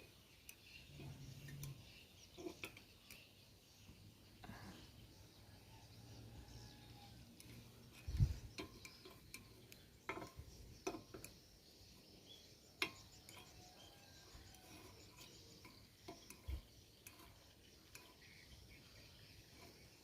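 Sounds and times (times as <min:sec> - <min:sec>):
utensils clinking against dishes: 0:07.9 - 0:11.4.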